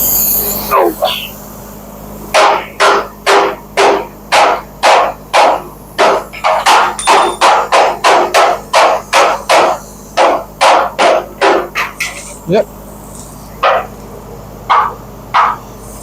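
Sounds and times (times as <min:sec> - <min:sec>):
hammer pounding on steel: 0:02.3 - 0:12.2, 0:13.6 - 0:14.0, 0:14.6 - 0:15.7.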